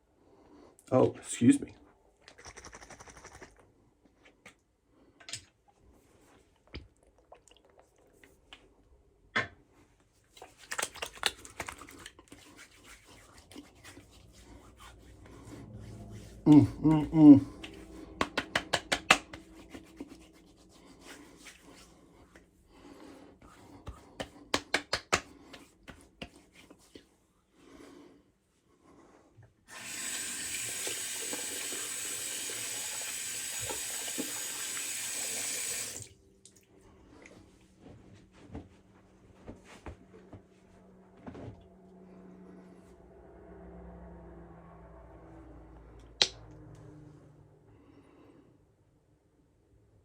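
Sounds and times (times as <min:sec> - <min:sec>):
sharp clicks and taps: 0:18.2 - 0:19.5
water tap running into sink: 0:29.7 - 0:36.1.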